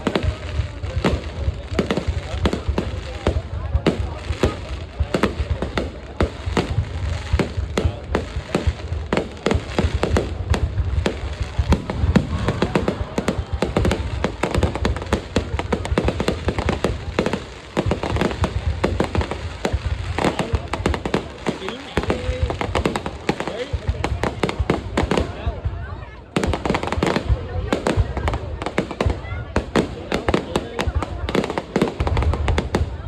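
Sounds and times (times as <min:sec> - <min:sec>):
fireworks bangs and crackles: 0:00.0 - 0:33.0.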